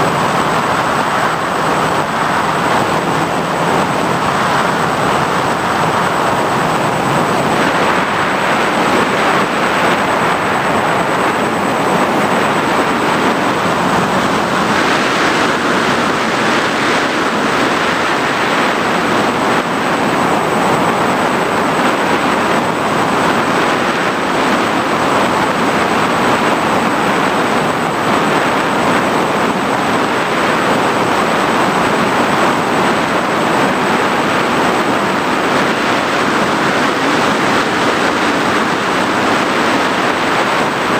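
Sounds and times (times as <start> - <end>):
faint high whine: 0.0 - 40.9
propeller and wind rush: 0.0 - 40.9.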